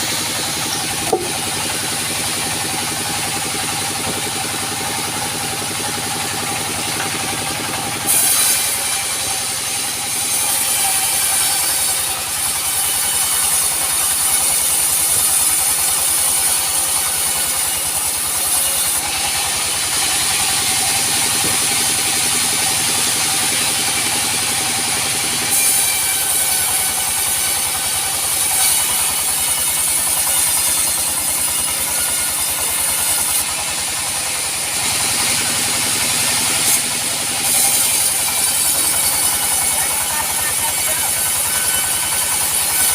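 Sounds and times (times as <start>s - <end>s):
motor drone: 0.0s - 10.5s, 18.7s - 26.1s
saw blade hissing through wood: 0.0s - 42.9s.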